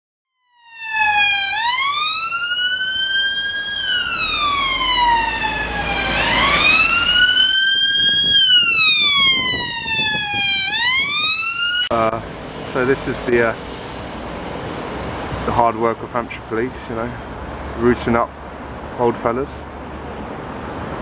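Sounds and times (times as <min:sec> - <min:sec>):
emergency vehicle siren wailing: 0:00.3 - 0:12.0.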